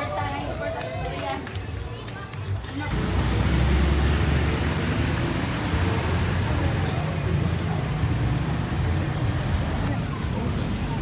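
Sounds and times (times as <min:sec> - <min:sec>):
road noise: 0:00.0 - 0:11.0
vehicle engine rumble: 0:02.9 - 0:11.0.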